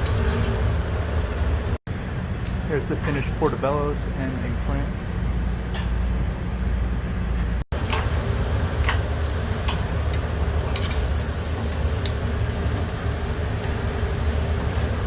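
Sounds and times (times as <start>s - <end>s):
steady low hum: 0.0s - 15.0s
utensils tapping on grill: 8.8s - 11.0s.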